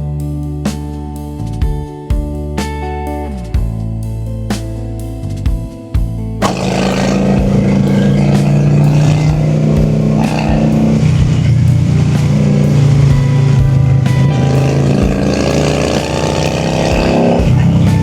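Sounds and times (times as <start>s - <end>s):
motorcycle engine running: 5.3s - 18.0s.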